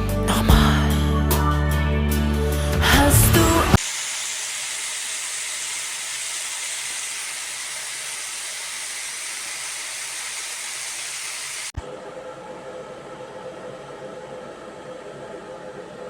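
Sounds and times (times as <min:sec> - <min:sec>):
food sizzling in a wok: 0:03.7 - 0:11.8.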